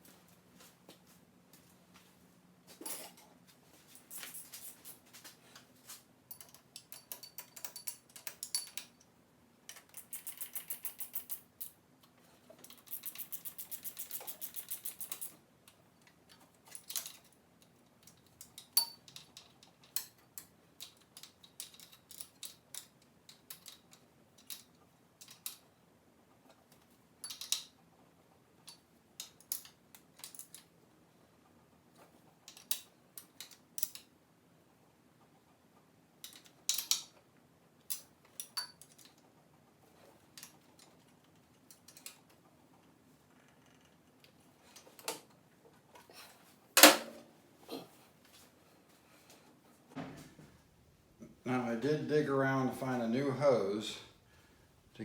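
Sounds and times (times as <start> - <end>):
metallic clicks of tools: 6.3 - 9.1, 9.7 - 25.6, 26.7 - 27.8, 32.4 - 34.1, 36.2 - 37.2, 40.4 - 42.2.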